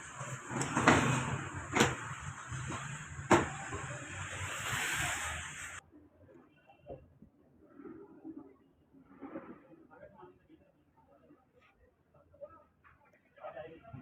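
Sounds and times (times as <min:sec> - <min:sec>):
mechanical hum and hiss: 0:00.0 - 0:05.8
sharp knocks: 0:00.6 - 0:03.9.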